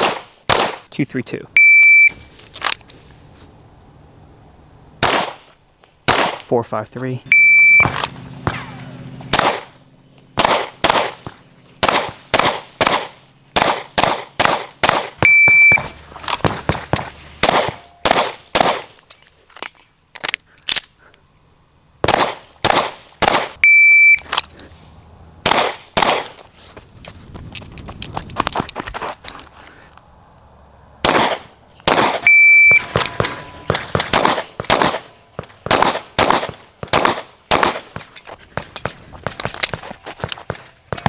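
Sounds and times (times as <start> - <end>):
rapid pistol shots: 0.0 - 0.9, 5.0 - 5.5, 6.1 - 6.5, 7.8 - 9.8, 10.4 - 19.0, 22.0 - 23.6, 25.4 - 26.4, 31.0 - 39.8
shot timer beep: 1.6 - 2.1, 7.3 - 7.9, 15.2 - 15.9, 23.6 - 24.2, 32.2 - 33.6.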